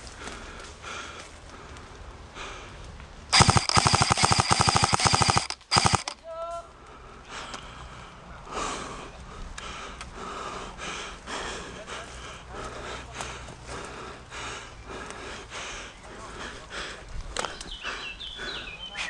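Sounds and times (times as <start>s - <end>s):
airsoft gun rapid fire: 3.3s - 6.2s.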